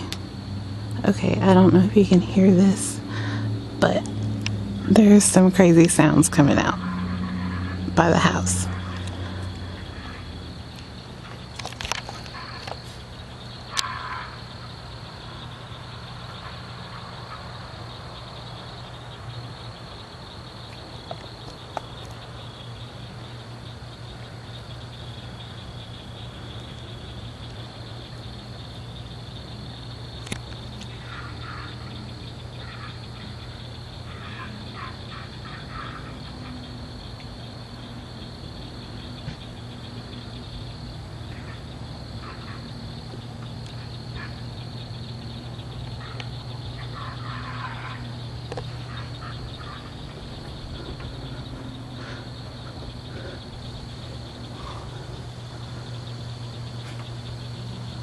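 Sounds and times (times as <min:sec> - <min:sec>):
crickets chirping: 0:00.0 - 0:58.0
low steady hum: 0:00.0 - 0:58.0
raspy rapid animal calls: 0:34.0 - 0:36.7, 0:45.9 - 0:56.1.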